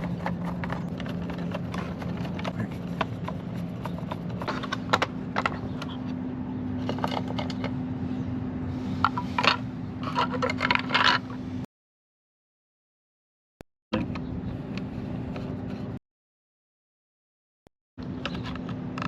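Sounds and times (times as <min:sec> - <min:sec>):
steady low hum: 0:00.0 - 0:11.7.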